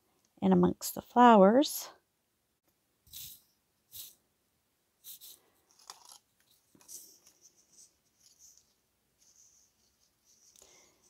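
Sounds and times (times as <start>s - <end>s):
paper rustling: 5.1s - 10.6s.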